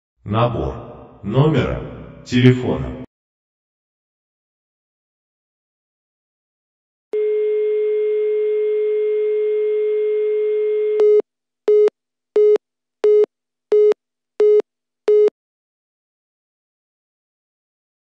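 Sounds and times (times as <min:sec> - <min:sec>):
telephone dial tone: 0:07.2 - 0:11.2
busy signal beeps: 0:07.2 - 0:15.3.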